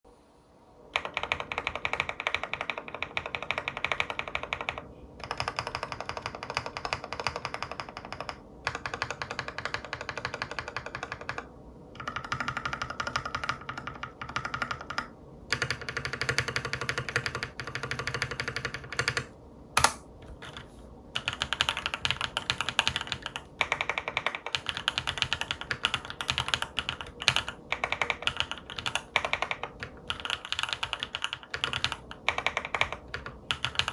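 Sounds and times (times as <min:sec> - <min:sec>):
fast mechanical keyboard typing: 0:01.0 - 0:33.9
loud keyboard clack: 0:12.0 - 0:20.6, 0:21.2 - 0:33.9.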